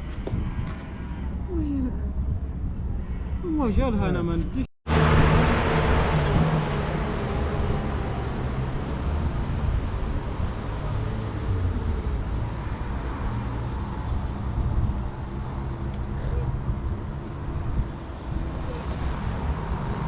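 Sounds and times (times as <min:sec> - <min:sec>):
vehicle engine rumble: 0:04.9 - 0:20.0.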